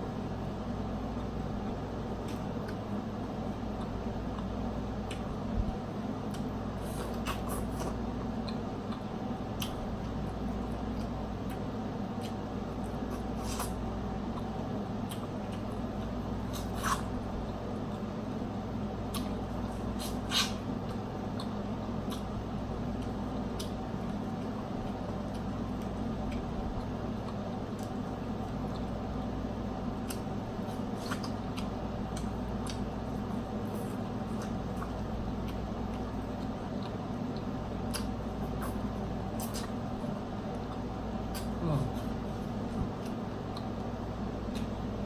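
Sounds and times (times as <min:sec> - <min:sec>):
steady low hum: 0:00.0 - 0:45.0
wet chewing and sucking: 0:06.2 - 0:18.1, 0:19.0 - 0:45.0.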